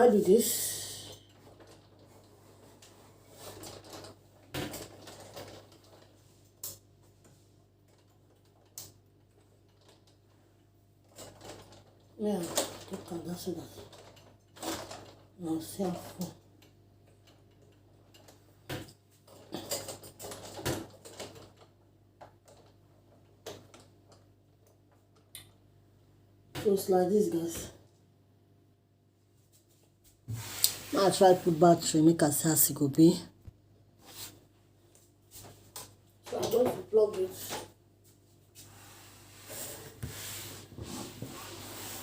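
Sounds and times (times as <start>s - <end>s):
rustling of parts: 1.2s - 16.3s, 17.0s - 25.3s.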